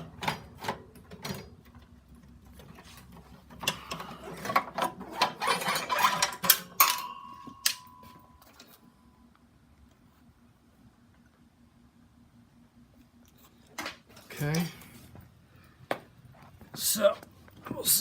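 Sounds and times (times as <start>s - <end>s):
small metallic clicks and rattles: 0.0s - 8.9s.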